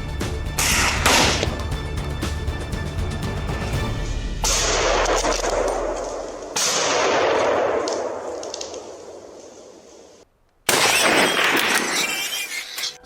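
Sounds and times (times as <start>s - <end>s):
gunshots with rolling echo: 4.0s - 11.8s
loud crack: 4.3s - 9.8s, 10.7s - 12.6s.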